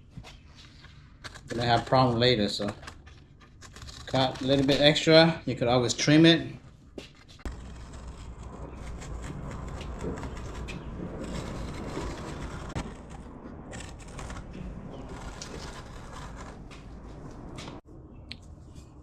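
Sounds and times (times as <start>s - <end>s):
carpet being cut: 1.2s - 5.3s, 7.4s - 16.9s.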